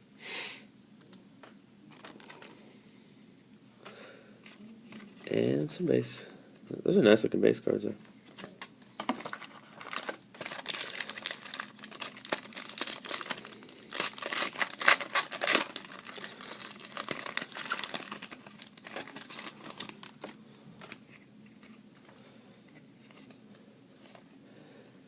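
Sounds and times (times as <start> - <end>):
wrapper tearing and crinkling: 1.9 - 2.5, 9.2 - 20.4.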